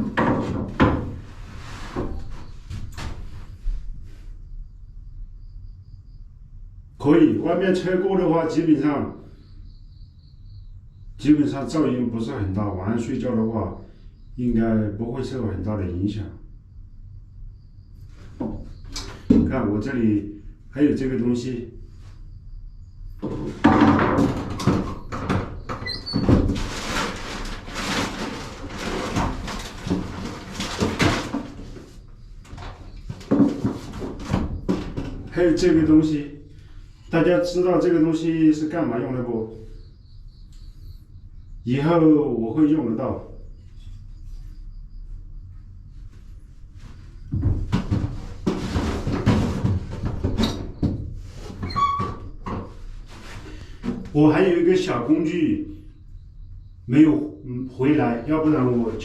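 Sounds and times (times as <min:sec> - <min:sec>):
objects knocking and rattling: 0:00.0 - 0:03.4, 0:23.2 - 0:35.4, 0:46.8 - 0:54.2
brief squeak: 0:25.8 - 0:26.3.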